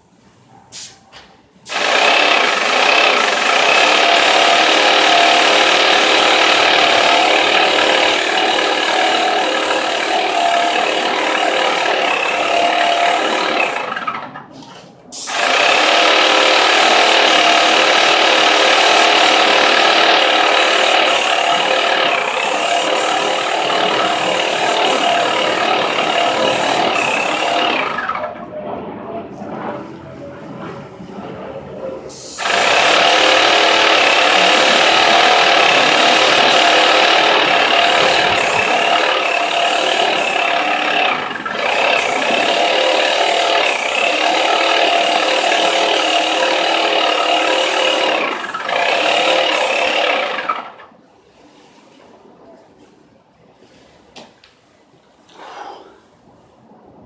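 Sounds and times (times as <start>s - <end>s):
garage door opener whirring: 1.7s - 14.5s, 15.3s - 28.4s, 32.4s - 50.9s.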